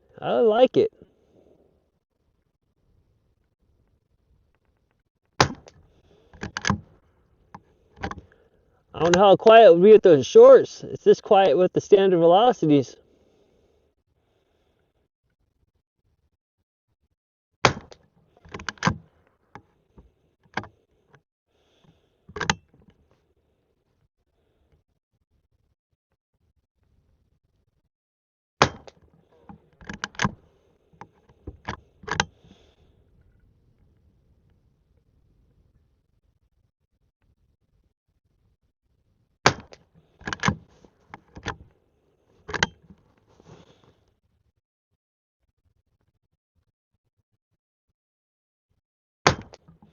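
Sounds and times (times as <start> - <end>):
rifle lever clacks: 6.4 - 6.9, 8.0 - 8.3, 17.8 - 19.1, 22.3 - 22.6, 28.6 - 30.4, 31.0 - 32.4, 39.5 - 41.6, 42.5 - 43.0.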